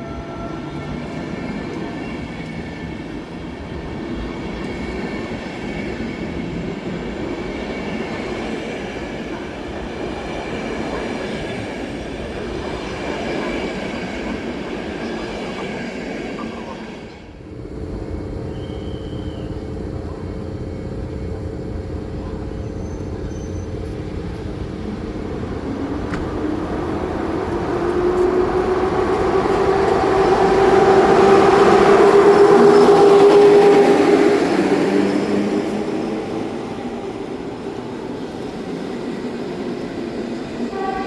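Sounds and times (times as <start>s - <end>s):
electric locomotive passing: 0.0s - 41.0s.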